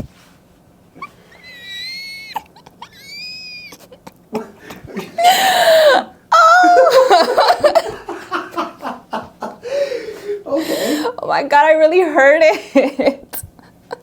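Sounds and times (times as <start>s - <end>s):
woman laughing shrilly: 1.0s - 4.1s, 5.0s - 9.8s.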